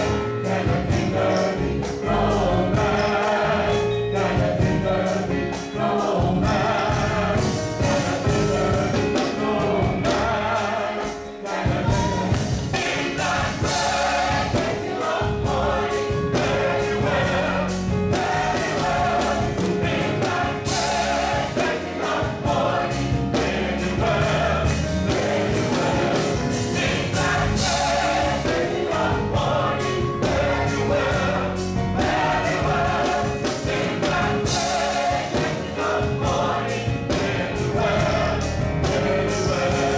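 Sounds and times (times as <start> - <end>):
band with beat and bass: 0.0 - 39.9
gospel choir singing: 0.0 - 39.9.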